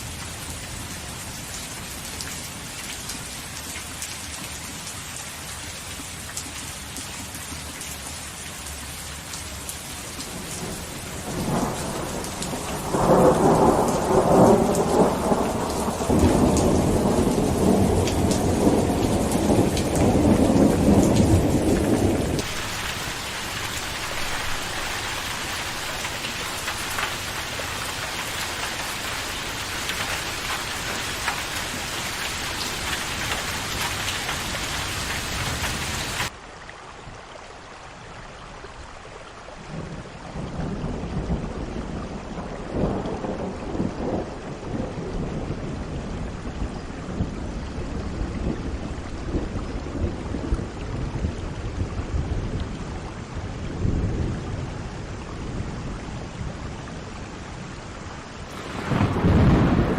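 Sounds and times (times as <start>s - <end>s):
steady rain falling: 0.0s - 59.9s
rolling thunder: 10.4s - 28.0s, 58.5s - 59.9s.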